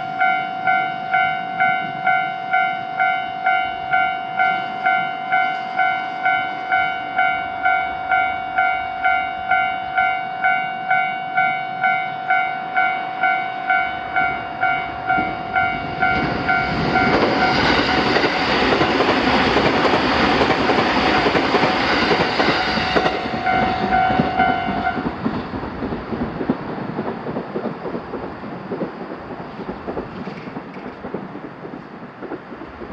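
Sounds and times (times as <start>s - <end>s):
level crossing alarm bell ringing: 0.0s - 17.8s, 22.8s - 25.0s
train passing with rushing rumble: 0.0s - 32.9s.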